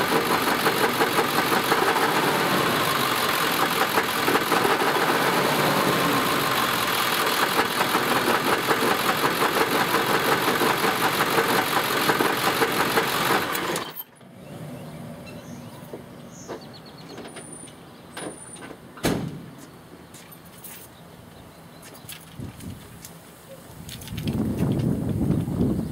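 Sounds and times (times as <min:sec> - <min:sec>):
diesel engine running: 0:00.0 - 0:18.5
sharp thump: 0:19.0 - 0:19.6.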